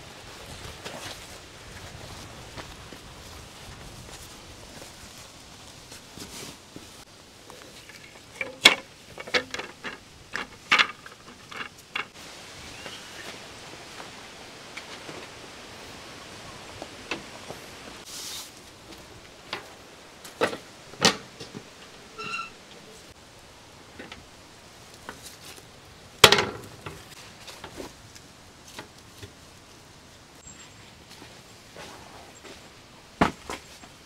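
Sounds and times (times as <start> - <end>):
steady background hiss: 0.0 - 34.0
camping gear knocks and clicks: 7.5 - 12.2, 18.9 - 22.3, 26.2 - 27.9
short squeak: 22.2 - 22.6.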